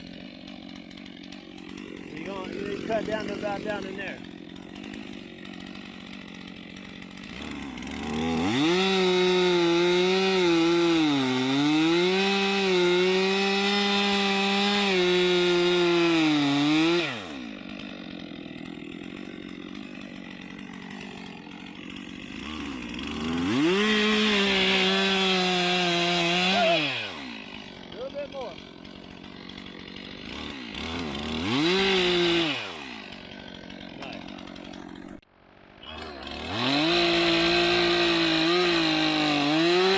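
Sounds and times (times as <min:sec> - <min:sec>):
chainsaw idling and cutting: 0:00.0 - 0:39.9.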